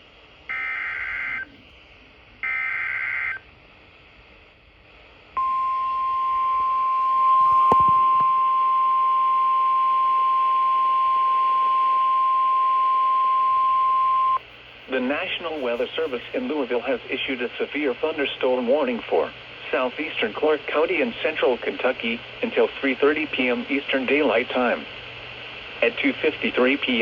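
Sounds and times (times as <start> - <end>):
steady warning alarm tone: 0.5 - 1.6, 2.4 - 3.4, 5.4 - 14.4.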